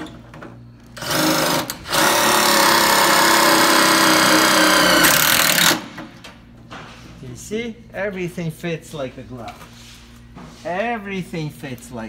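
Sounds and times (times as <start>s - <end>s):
power drill driving screw: 1.0s - 5.9s.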